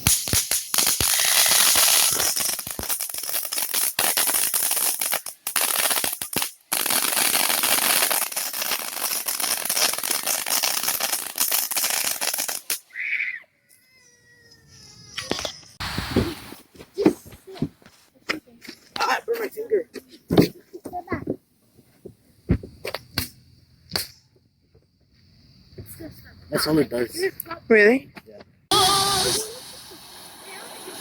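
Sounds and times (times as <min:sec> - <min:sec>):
firework fountain hissing and crackling: 0:00.0 - 0:12.8, 0:15.2 - 0:16.8, 0:28.7 - 0:31.0.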